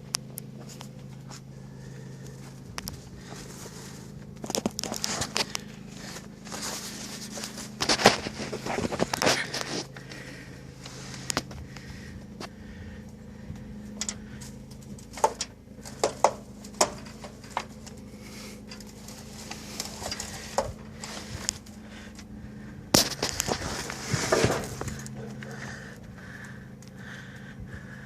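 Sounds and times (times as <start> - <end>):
low mechanical hum: 0.0 - 28.0.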